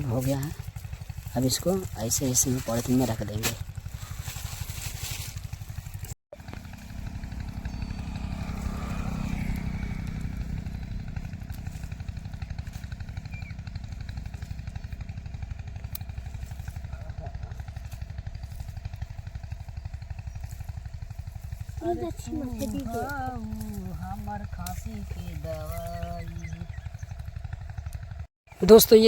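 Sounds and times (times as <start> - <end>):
engine running with low throb: 0.0 - 29.0.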